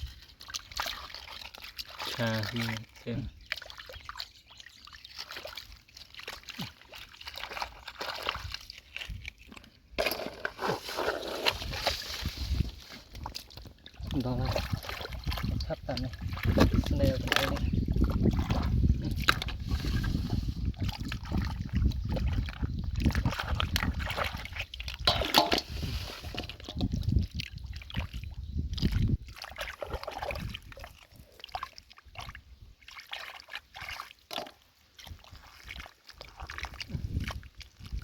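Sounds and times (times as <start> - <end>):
hands squelching in wet mud: 0.0 - 38.0.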